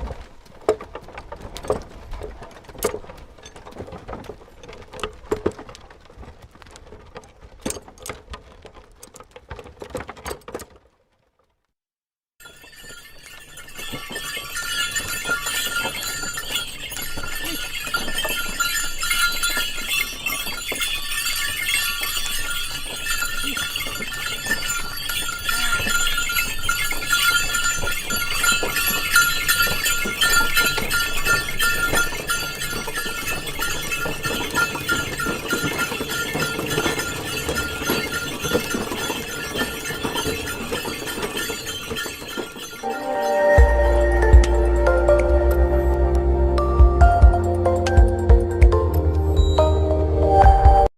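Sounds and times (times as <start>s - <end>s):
clatter of hooves and cart: 0.0s - 11.8s, 12.4s - 48.8s
bullock bells ringing: 12.4s - 50.9s.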